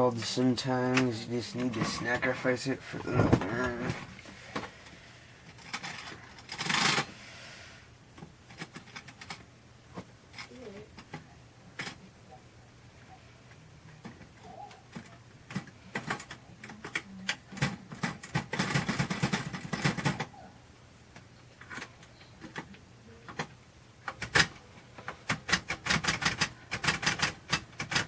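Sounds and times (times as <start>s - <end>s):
typewriter typebars clacking: 17.6s - 20.3s, 24.1s - 24.6s, 25.3s - 28.0s.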